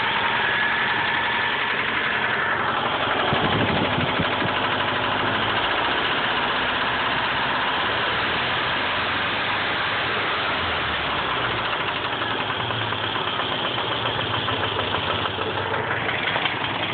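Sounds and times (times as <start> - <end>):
car engine idling: 0.0 - 16.9
fast knocking rattle: 0.9 - 7.6, 11.3 - 16.9.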